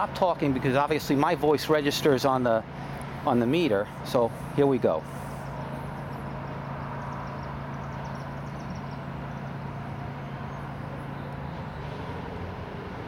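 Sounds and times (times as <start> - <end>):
distant highway traffic: 0.0 - 13.0.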